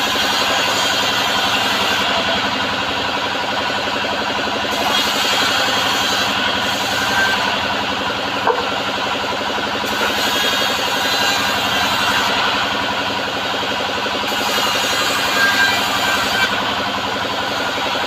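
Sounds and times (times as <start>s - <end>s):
bandsaw sawmill droning: 0.0s - 18.0s
short knock: 8.4s - 8.8s.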